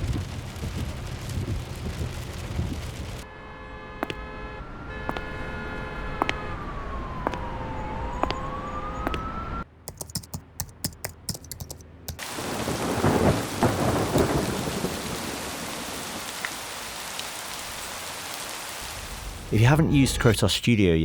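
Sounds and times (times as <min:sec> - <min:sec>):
siren wailing: 0:03.7 - 0:09.7
sharp clicks: 0:09.9 - 0:12.2.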